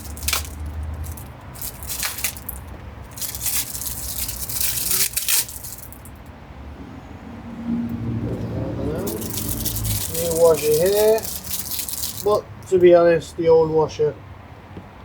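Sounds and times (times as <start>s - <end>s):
plastic packaging crinkling: 0.0s - 6.2s, 9.0s - 12.4s.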